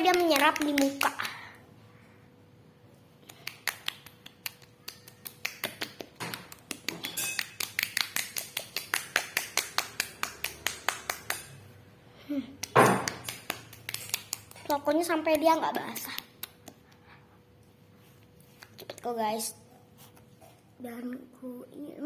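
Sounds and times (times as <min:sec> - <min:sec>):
hands patting wet face: 0:03.2 - 0:11.4, 0:12.6 - 0:17.0.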